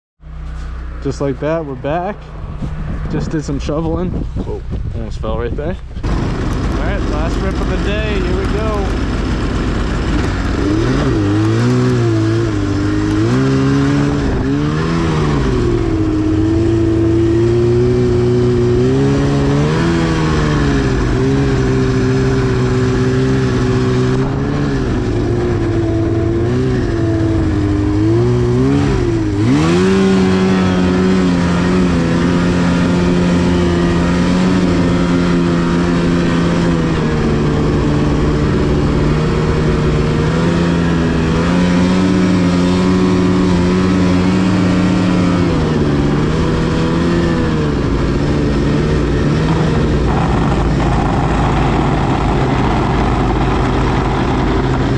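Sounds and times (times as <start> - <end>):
snowmobile engine revving: 6.0 - 14.1.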